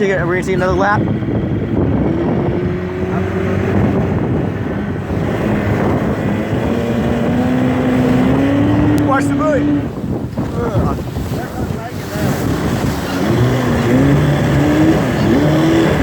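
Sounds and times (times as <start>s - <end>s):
outboard motor running: 0.0s - 16.0s
wind noise on microphone: 0.0s - 16.0s.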